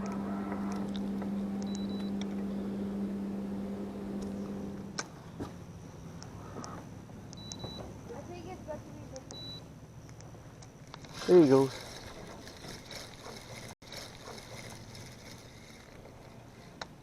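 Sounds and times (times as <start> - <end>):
electric boat motor humming: 0.0 - 5.2.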